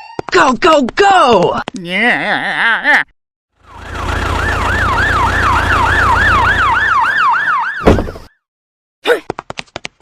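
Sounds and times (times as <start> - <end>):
emergency siren warbling: 3.6 - 8.3.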